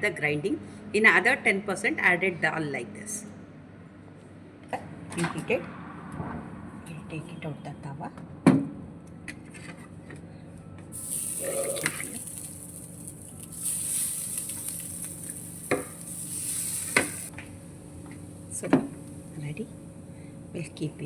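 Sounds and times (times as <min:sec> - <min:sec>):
batter sizzling in a pan: 0:11.0 - 0:17.3.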